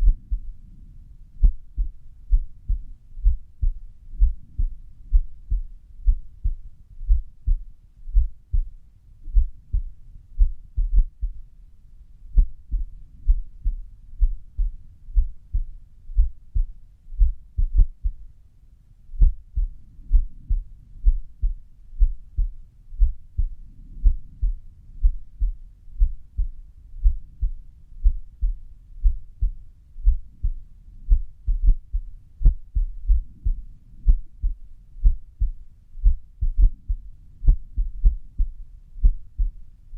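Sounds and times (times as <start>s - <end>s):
heartbeat thumps: 0.0s - 0.6s, 1.4s - 11.5s, 12.3s - 18.3s, 19.2s - 39.6s.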